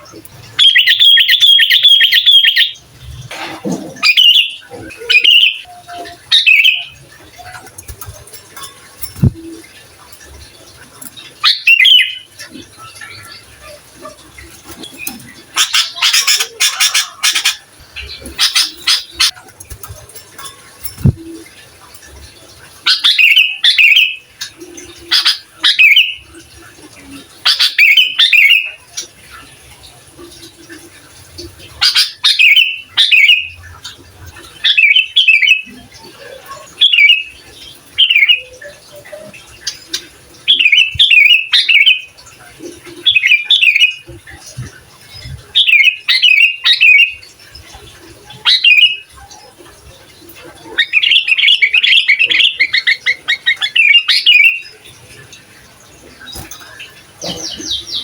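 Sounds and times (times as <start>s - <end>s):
bird singing whistled phrases: 4.1s - 7.0s.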